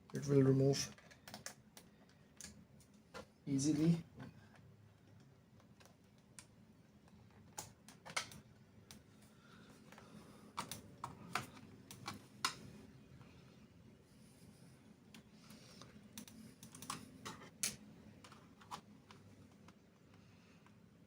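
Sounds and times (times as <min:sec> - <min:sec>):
small tools clicking on plastic: 0:00.8 - 0:03.2, 0:04.4 - 0:09.0, 0:09.9 - 0:12.6, 0:15.8 - 0:19.8.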